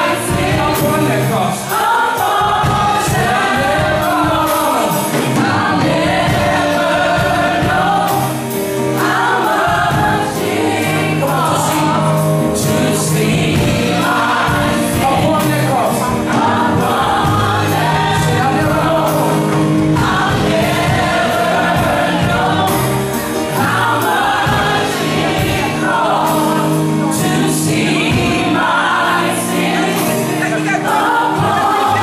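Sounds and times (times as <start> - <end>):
band playing: 0.0 - 32.0
group of voices singing: 0.0 - 32.0.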